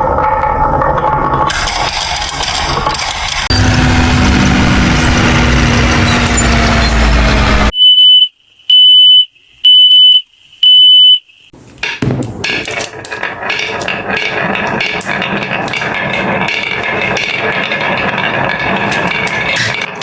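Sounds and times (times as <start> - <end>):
toy engine rumbling: 0.7 - 7.7, 11.8 - 20.0
plastic clatter: 11.7 - 20.0.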